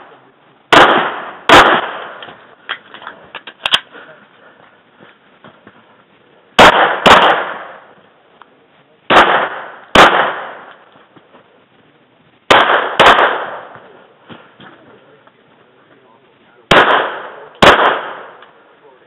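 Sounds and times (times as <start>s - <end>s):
pistol shots with echo: 0.0s - 2.4s, 6.6s - 8.0s, 9.1s - 10.9s, 12.5s - 14.6s, 16.7s - 18.7s.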